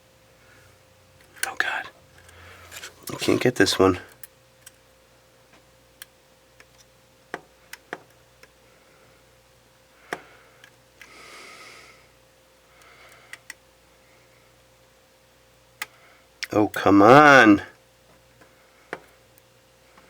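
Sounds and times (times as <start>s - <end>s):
small clicks and taps on plastic: 5.5s - 8.6s
soft breath through nose: 10.0s - 13.4s.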